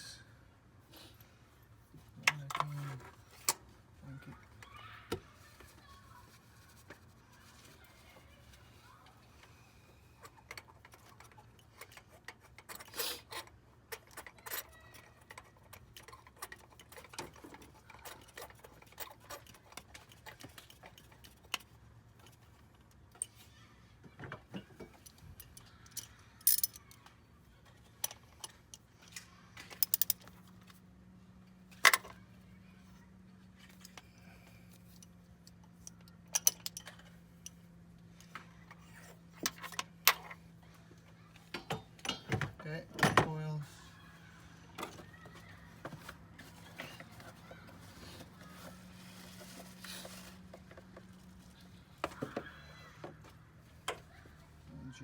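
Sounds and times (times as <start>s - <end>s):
hand tools clicking and clinking: 10.2s - 23.4s, 24.7s - 27.1s, 27.7s - 30.5s, 34.8s - 37.6s.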